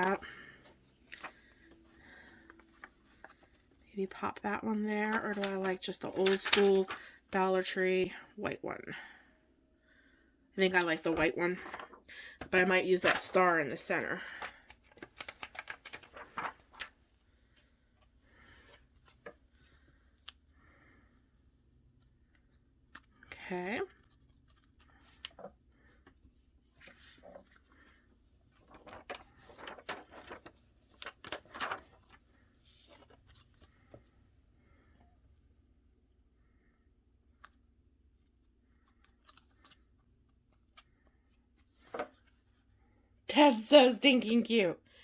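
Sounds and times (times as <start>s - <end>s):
paper and stickers rustling: 0.0s - 3.7s, 5.0s - 7.2s, 10.6s - 20.4s, 22.9s - 34.2s, 37.4s - 42.7s.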